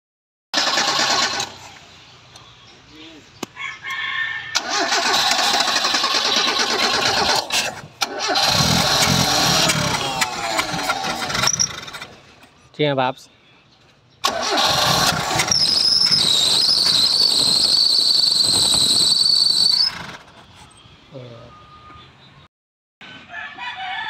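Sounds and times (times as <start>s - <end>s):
car starter motor cranking: 0.6s - 1.6s, 4.6s - 12.2s, 14.2s - 20.4s.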